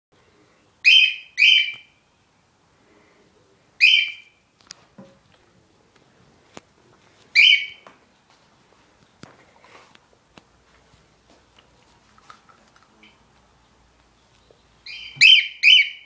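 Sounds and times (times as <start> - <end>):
bird calling loudly: 0.8 - 2.0, 3.8 - 4.4, 7.4 - 7.8, 14.4 - 16.0.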